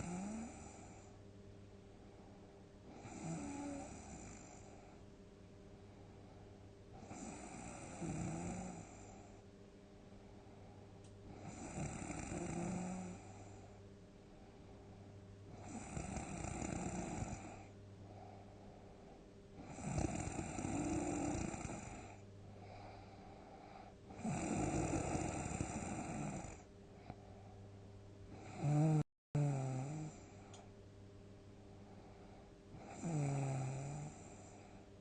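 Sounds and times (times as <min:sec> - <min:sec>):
person snoring heavily: 0:00.0 - 0:01.1, 0:02.9 - 0:04.8, 0:07.0 - 0:09.2, 0:11.3 - 0:13.6, 0:15.5 - 0:17.7, 0:19.6 - 0:22.9, 0:24.1 - 0:26.6, 0:28.4 - 0:30.3, 0:32.8 - 0:34.6
quiet breathing: 0:00.0 - 0:30.8, 0:31.5 - 0:35.0
faint steady hum: 0:00.0 - 0:35.0.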